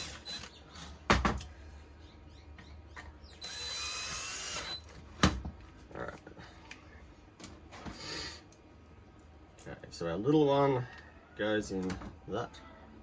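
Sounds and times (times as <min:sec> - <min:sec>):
cordless drill driving screw: 0:00.0 - 0:00.6, 0:03.4 - 0:04.9.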